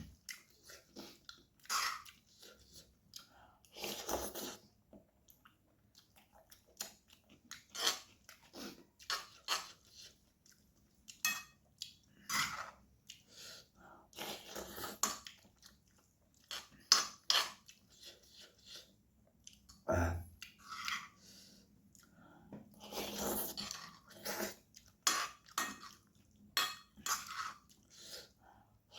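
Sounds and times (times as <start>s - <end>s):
chewing and crunching: 0.1s - 19.8s, 21.8s - 28.3s.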